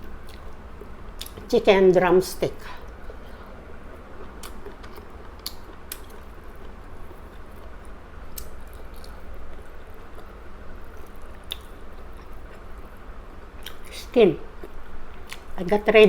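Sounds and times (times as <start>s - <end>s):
chewing chicken: 0.0s - 1.5s, 2.6s - 15.7s
steady low hum: 0.0s - 16.0s
mouth clicks and smacks: 1.2s - 1.5s, 3.9s - 13.0s, 13.6s - 15.6s.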